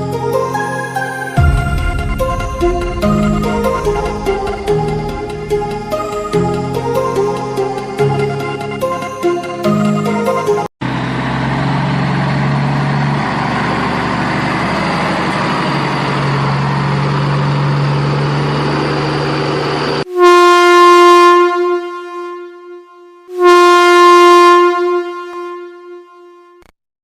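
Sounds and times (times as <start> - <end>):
single-note horn blasts: 1.3 - 9.2, 20.1 - 26.7
vehicle rumbling: 1.4 - 9.1, 10.8 - 20.1.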